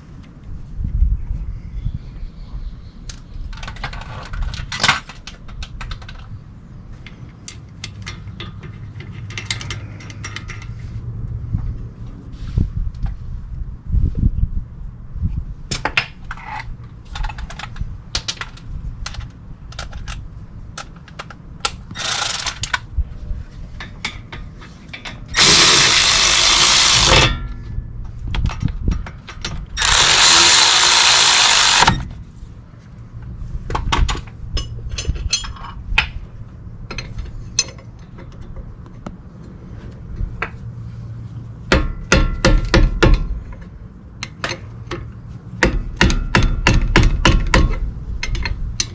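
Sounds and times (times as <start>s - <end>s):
clicks and clatter of tools: 3.1s - 10.8s, 15.7s - 22.9s, 36.9s - 40.6s, 48.2s - 48.9s
power tool running: 22.0s - 22.6s, 25.4s - 27.4s, 29.8s - 32.1s
rapid clicking: 29.8s - 32.0s.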